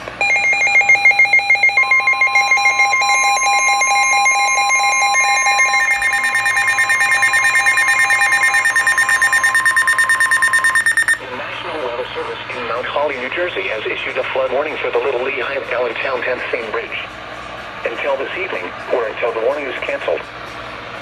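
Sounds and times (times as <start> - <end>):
rapid electronic beeping: 0.2 - 11.2
steady alert tone: 0.2 - 11.2.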